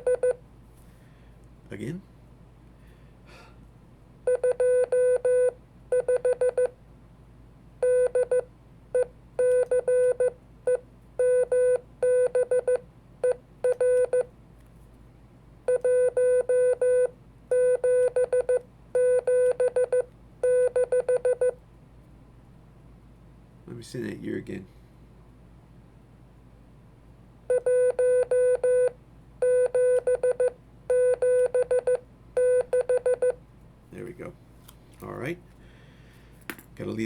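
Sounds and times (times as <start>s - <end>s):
morse code tone: 27.5s - 33.4s.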